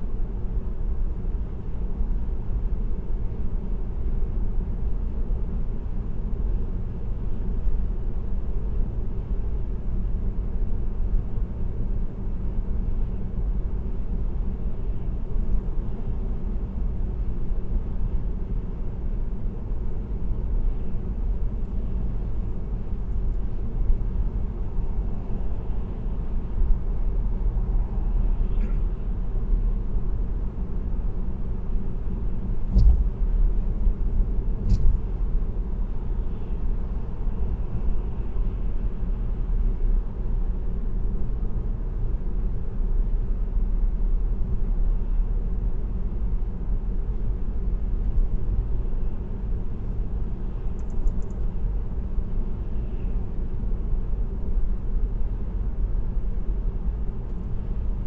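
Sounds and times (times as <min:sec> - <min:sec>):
car road and engine rumble: 0:00.0 - 0:58.0
short thumps: 0:32.7 - 0:33.3.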